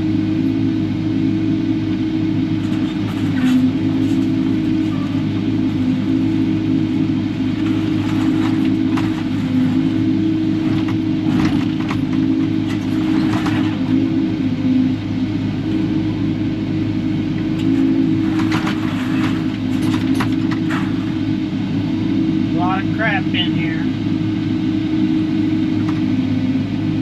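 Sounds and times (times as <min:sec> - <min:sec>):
excavator diesel engine under load: 0:00.0 - 0:27.0
bucket clanking on scrap metal: 0:17.6 - 0:21.2.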